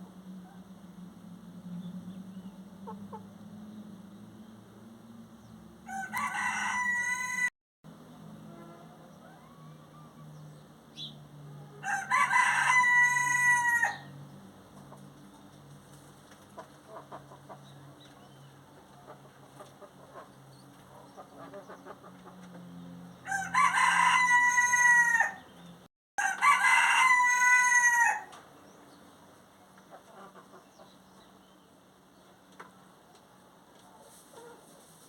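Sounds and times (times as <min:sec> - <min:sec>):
rooster crowing: 0:05.8 - 0:07.5, 0:11.8 - 0:14.2, 0:23.2 - 0:25.4, 0:26.2 - 0:28.3.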